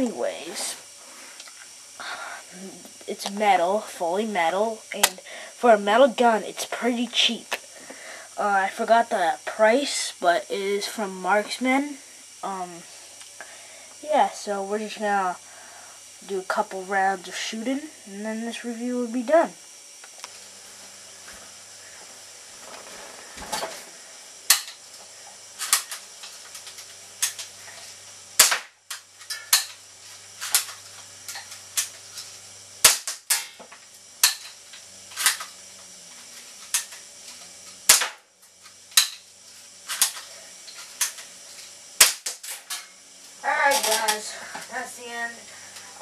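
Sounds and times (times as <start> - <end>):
air pistol shots snapping: 24.5 - 24.7, 28.4 - 28.7, 32.8 - 33.5, 34.2 - 34.5, 37.9 - 38.2, 39.0 - 39.2, 42.0 - 42.6.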